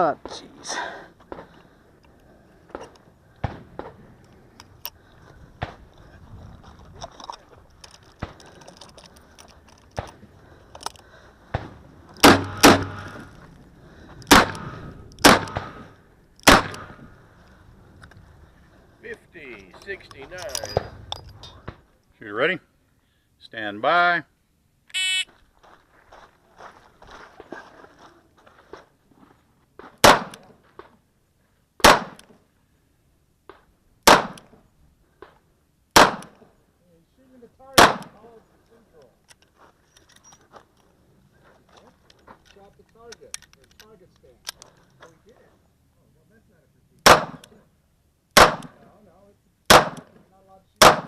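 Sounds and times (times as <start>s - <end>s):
handgun shots: 12.2s - 13.1s, 14.3s - 15.8s, 16.4s - 16.9s, 30.0s - 30.4s, 34.1s - 34.5s, 36.0s - 36.4s, 37.8s - 38.2s, 47.0s - 47.5s, 48.4s - 48.8s, 49.7s - 50.1s.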